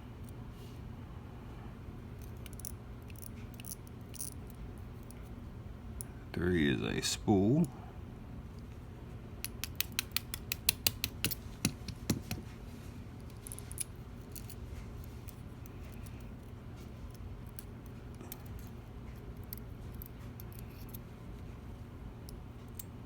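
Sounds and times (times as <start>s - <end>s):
small metal clicks and taps: 9.4s - 12.4s.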